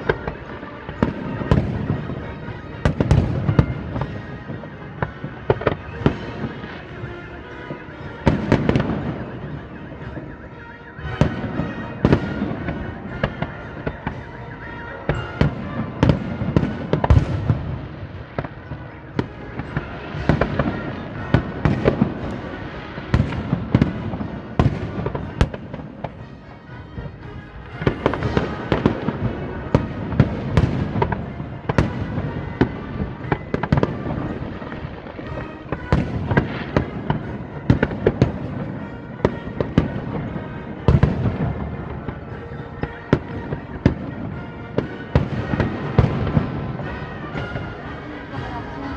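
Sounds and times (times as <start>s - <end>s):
fireworks bangs and crackling: 0.0s - 48.9s.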